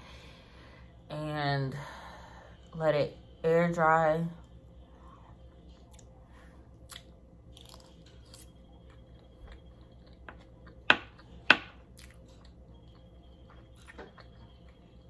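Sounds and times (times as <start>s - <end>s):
person chewing food: 4.8s - 15.0s.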